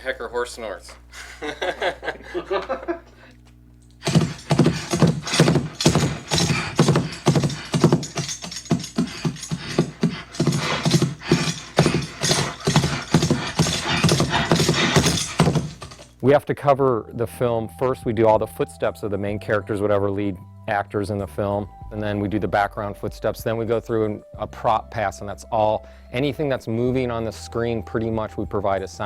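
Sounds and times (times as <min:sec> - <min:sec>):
horse snorts: 0:04.0 - 0:16.1
bridle jingling: 0:04.0 - 0:16.2
hooves clip-clopping: 0:04.0 - 0:16.2.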